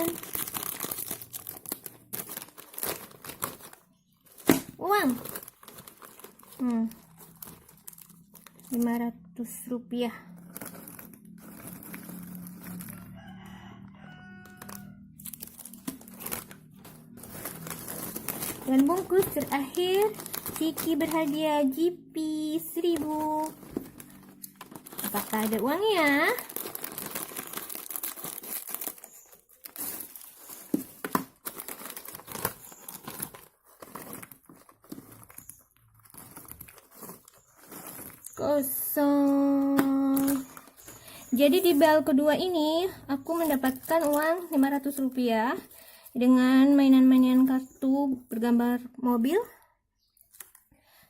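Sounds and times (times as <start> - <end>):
plastic snack packet crinkling: 0.0 - 9.2, 10.3 - 46.1, 50.2 - 51.0
rooster crowing: 12.6 - 15.4.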